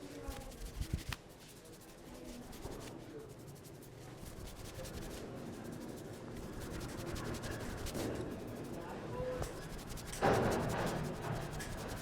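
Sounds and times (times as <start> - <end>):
fingers scratching through hair: 0.1 - 12.0.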